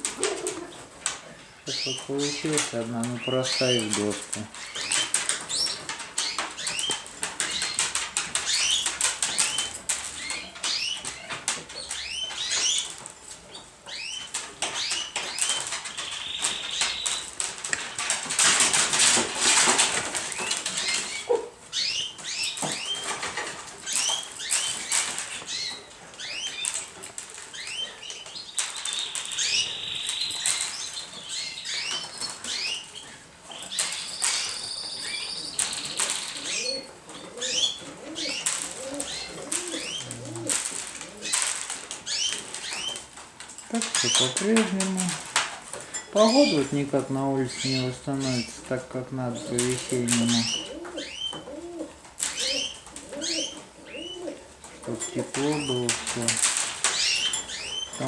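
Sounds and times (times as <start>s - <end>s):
pigeons flapping wings: 2.2s - 12.0s, 14.3s - 21.2s, 35.4s - 48.7s, 49.4s - 58.0s.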